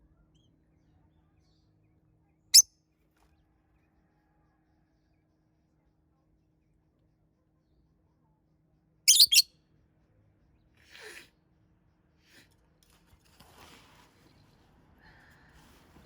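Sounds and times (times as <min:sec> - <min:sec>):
bird short chirp: 0:09.1 - 0:09.4
bird shrill calls: 0:09.1 - 0:09.4.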